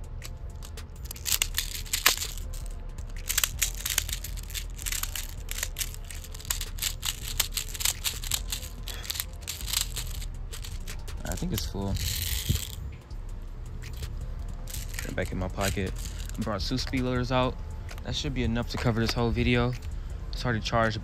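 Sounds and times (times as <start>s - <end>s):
plastic pellets clicking and rattling: 0.0s - 12.9s, 13.9s - 17.1s.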